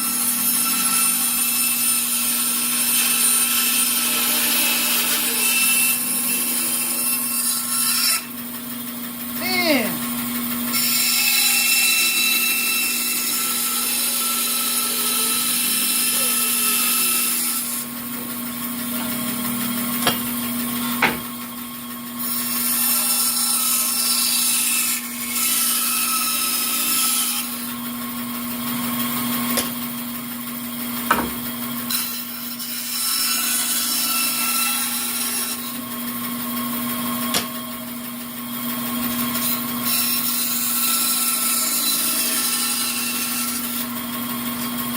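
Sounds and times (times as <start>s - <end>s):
bandsaw cutting wood: 0.0s - 44.9s.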